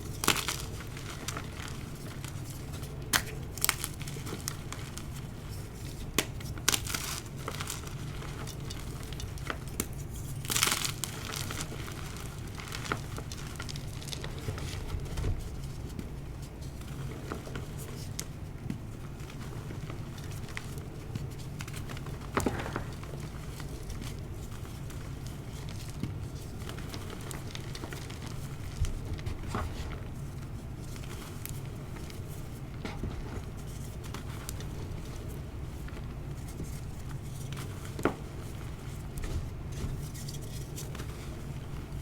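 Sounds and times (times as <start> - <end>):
chalk crunching and crumbling: 0.0 - 18.2, 19.2 - 30.2
steady low hum: 0.0 - 42.0.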